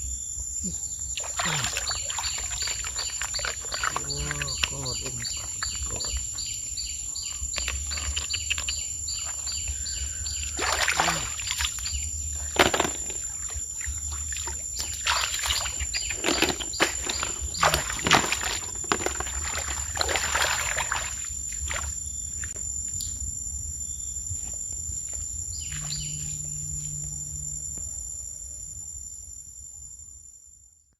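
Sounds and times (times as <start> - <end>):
insects droning: 0.0 - 30.9
rapid chirping: 0.6 - 18.7
bird calls: 0.6 - 23.2, 25.5 - 27.2
low hum: 25.3 - 28.0.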